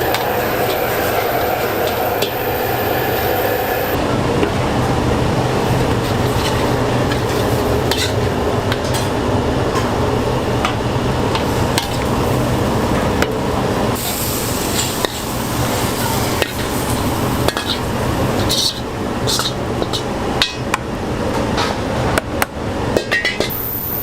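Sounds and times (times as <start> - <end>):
food sizzling: 0.0 - 4.0, 13.8 - 20.3.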